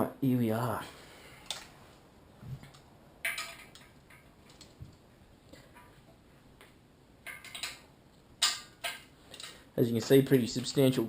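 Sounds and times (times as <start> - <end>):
metallic clicks of engine parts: 7.2 - 9.6.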